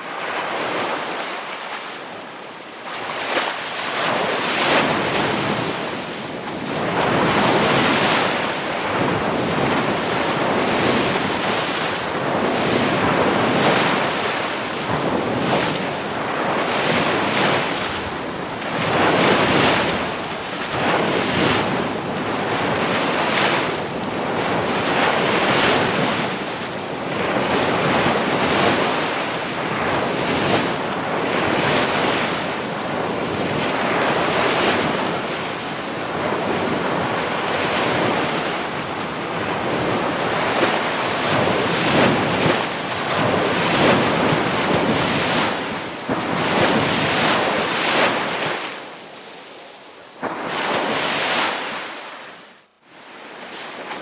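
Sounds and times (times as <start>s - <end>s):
ocean waves breaking: 0.0s - 54.0s.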